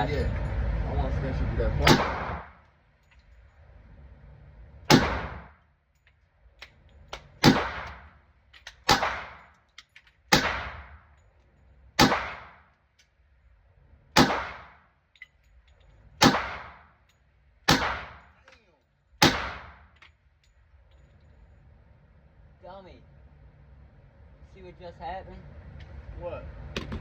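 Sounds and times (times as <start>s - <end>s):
pistol shots with echo: 1.8s - 2.6s, 4.9s - 5.5s, 7.4s - 8.0s, 8.9s - 9.4s, 10.3s - 10.9s, 12.0s - 12.6s, 14.2s - 14.8s, 16.2s - 16.8s, 17.7s - 18.3s, 19.2s - 19.8s.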